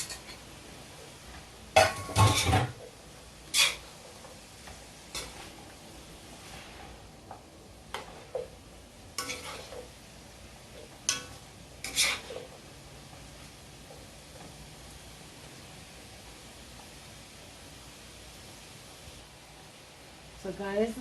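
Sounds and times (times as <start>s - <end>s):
faint sizzle: 0.0s - 21.0s
spoon scraping a pot: 3.5s - 3.9s, 5.1s - 5.6s, 9.2s - 9.9s, 10.8s - 12.6s.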